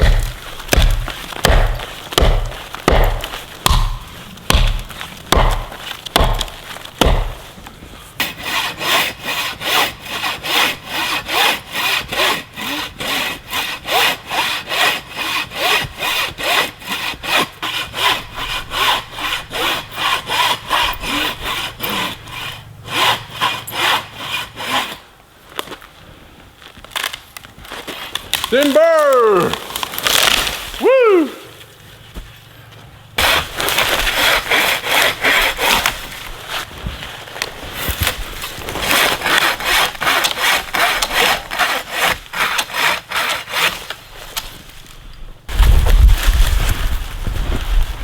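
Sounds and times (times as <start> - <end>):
wood cracking: 0.0 - 7.8, 26.6 - 30.9, 33.2 - 47.8
hand saw cutting wood: 0.0 - 25.1, 33.2 - 45.0.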